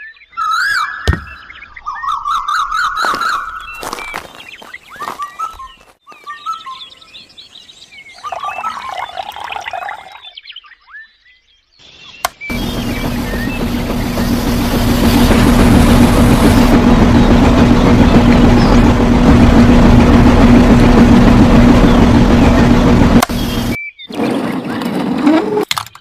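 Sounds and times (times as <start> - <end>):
motor humming: 12.5 - 23.8.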